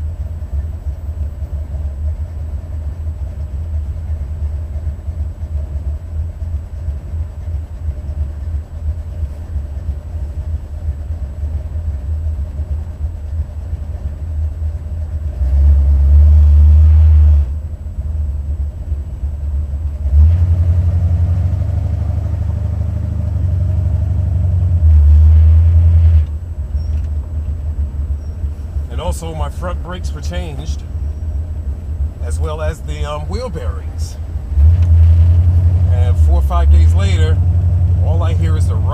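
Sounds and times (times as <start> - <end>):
car engine revving: 20.0 - 26.4, 28.5 - 38.9.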